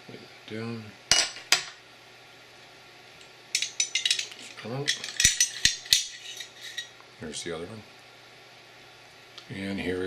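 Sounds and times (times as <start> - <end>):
metal parts clinking: 3.6 - 6.9.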